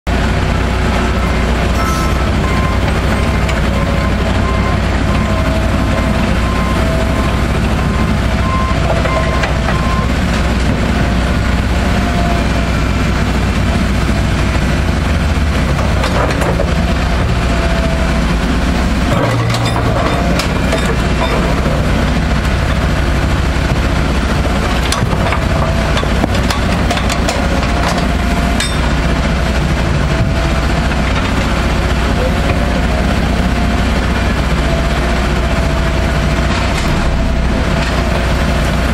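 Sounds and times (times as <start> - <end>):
excavator diesel engine running: 0.1 - 38.9
beeping alarm: 1.1 - 10.1
sharp metallic knocks: 1.7 - 3.7.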